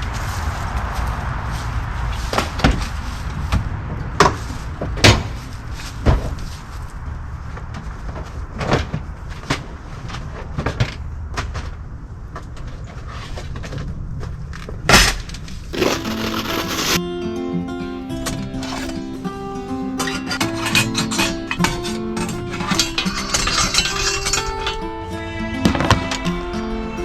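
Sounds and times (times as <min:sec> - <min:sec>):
steady low rumble: 0:00.0 - 0:09.2.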